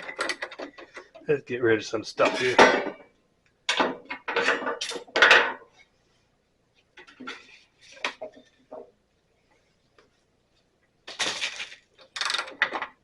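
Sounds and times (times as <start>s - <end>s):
metal tools clattering and knocking: 0.0s - 1.3s, 2.2s - 5.8s.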